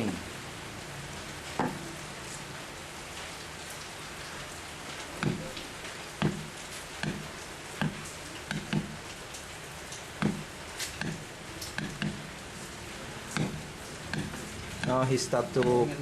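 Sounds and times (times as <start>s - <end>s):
chisel tapping through rawhide into wood: 10.2s - 11.2s, 11.8s - 12.2s, 13.4s - 15.0s.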